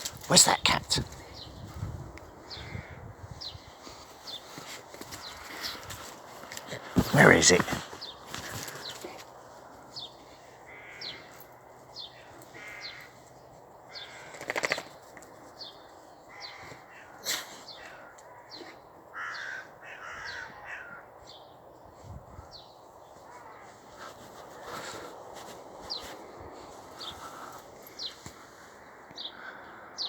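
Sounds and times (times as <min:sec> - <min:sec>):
harsh bird caws: 0:10.6 - 0:11.6, 0:12.2 - 0:13.3, 0:16.3 - 0:21.1, 0:29.2 - 0:30.0
loud rattling bird call: 0:13.9 - 0:15.2.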